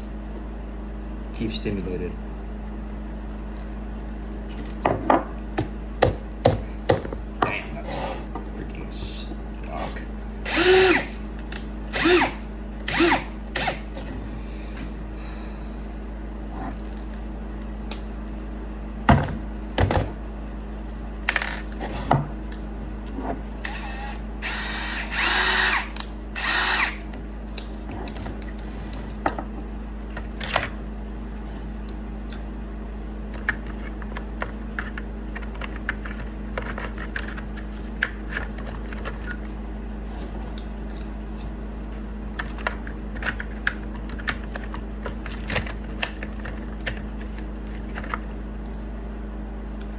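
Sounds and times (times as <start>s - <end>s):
steady hum: 0.0s - 49.9s
whirring grinding bursts: 9.8s - 14.2s, 23.6s - 27.3s.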